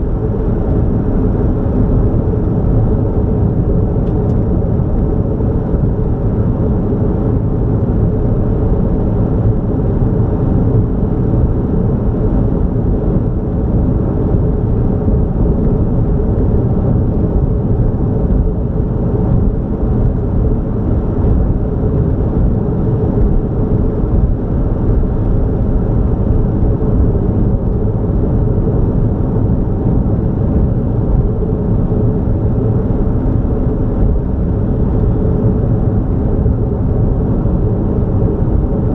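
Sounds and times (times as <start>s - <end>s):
vehicle tyre and engine noise: 0.0s - 38.9s.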